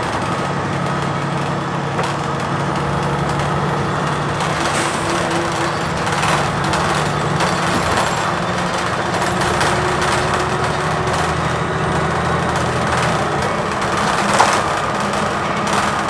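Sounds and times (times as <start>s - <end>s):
bus engine running: 0.0s - 16.0s
road noise: 0.0s - 16.0s.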